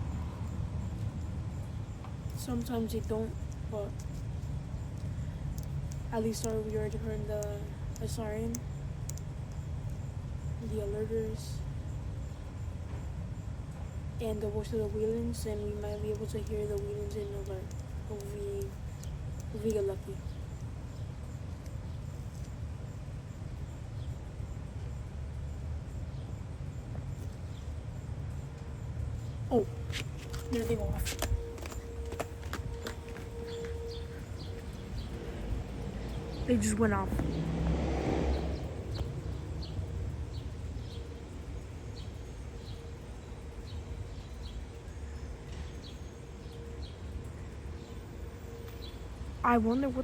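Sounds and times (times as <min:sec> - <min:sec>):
distant warning sirens: 0:00.0 - 0:50.0
low rumble: 0:29.0 - 0:45.5
bird chirping: 0:29.2 - 0:50.0.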